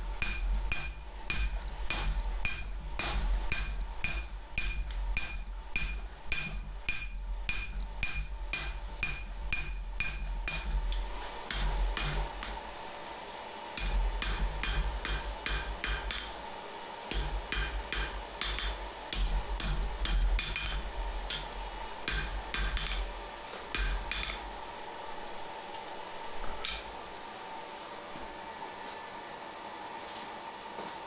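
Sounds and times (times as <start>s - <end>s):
faint steady hum: 0.0s - 31.0s
hammer ringing on steel: 0.2s - 2.7s, 3.5s - 10.8s.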